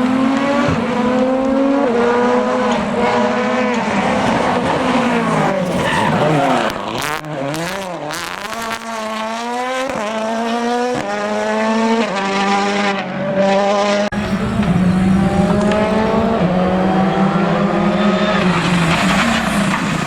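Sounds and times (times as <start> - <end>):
rally car engine accelerating: 0.0 - 20.0.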